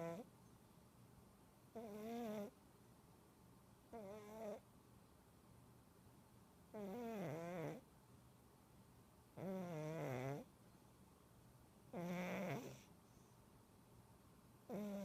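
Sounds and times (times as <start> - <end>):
cat snoring: 0.0 - 0.3, 1.7 - 2.6, 3.9 - 4.6, 6.7 - 7.8, 9.4 - 10.5, 11.9 - 12.9, 14.7 - 15.0.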